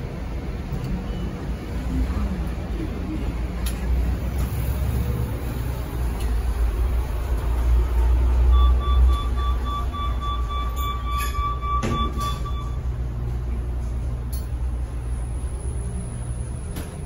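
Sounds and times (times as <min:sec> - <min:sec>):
traffic rumble: 0:00.0 - 0:17.0
wind: 0:00.0 - 0:17.0
lift door warning beeps: 0:08.3 - 0:13.2
lift doors knocking shut: 0:10.6 - 0:12.7.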